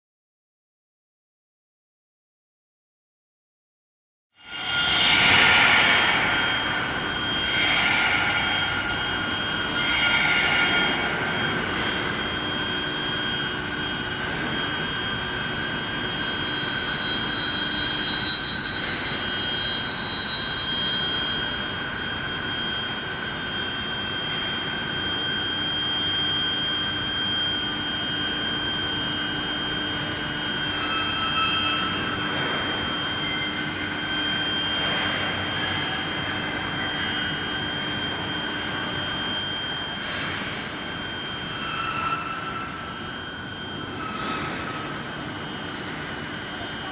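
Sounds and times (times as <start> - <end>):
machinery noise: 4.4 - 22.2, 39.8 - 46.9
high-pitched whine: 4.4 - 46.9.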